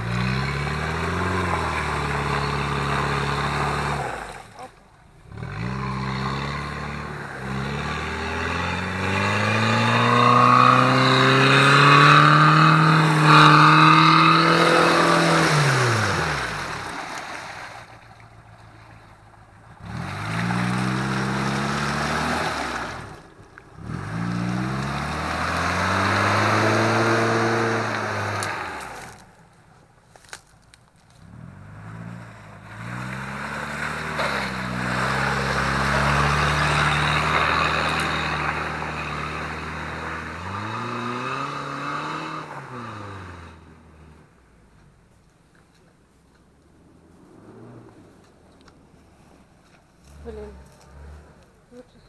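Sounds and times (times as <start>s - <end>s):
engine revving hard: 0.0s - 17.0s, 19.8s - 29.2s, 31.3s - 43.6s.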